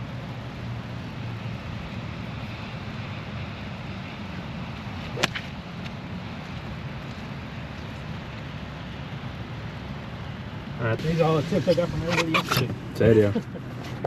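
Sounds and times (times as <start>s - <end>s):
rain noise: 0.0s - 14.0s
golf club striking ball: 5.1s - 5.5s.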